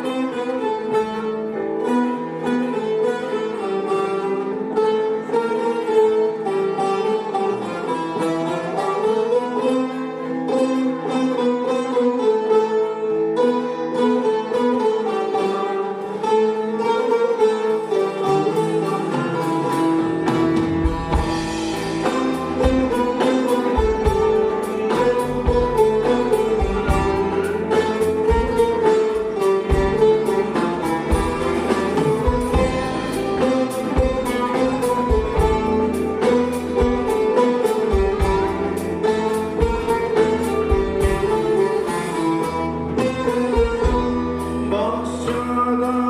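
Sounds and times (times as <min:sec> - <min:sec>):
plucked and bowed string folk music: 0:00.0 - 0:46.0
low drum beats: 0:19.7 - 0:41.9.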